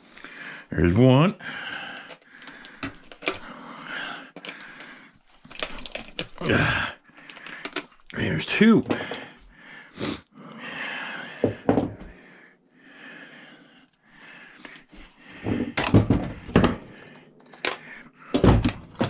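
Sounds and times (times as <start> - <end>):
knocks and clatter of metal parts: 15.4 - 19.0.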